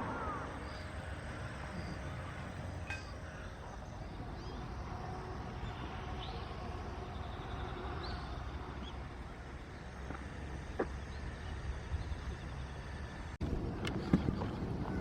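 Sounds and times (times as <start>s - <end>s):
faint bird calls: 0.0s - 9.0s.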